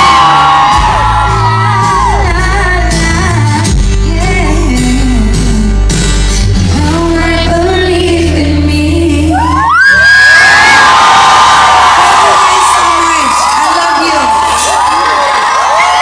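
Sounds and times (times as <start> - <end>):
audience shouting: 0.0 - 2.2, 9.7 - 16.0
live pop band: 0.0 - 16.0
woman singing long notes: 6.7 - 9.7.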